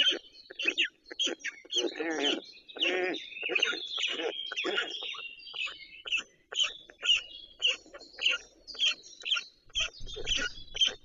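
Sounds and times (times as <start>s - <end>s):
bird chirping: 0.0s - 11.0s.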